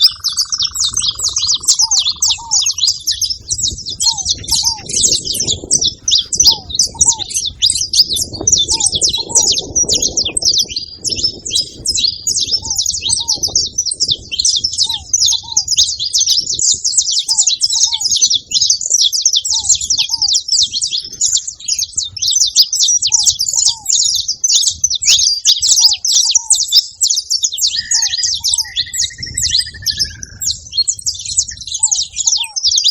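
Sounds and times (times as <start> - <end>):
finches chirping: 0.0 - 32.9
lower short bird call: 27.6 - 30.5.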